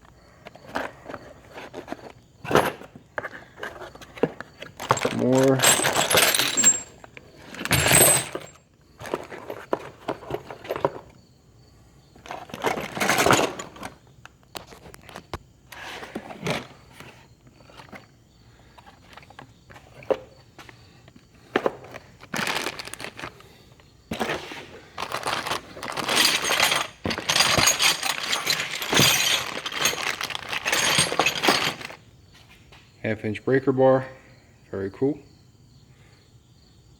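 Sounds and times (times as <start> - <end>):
packaging crinkling and rustling: 21.8 - 23.4, 24.1 - 32.0.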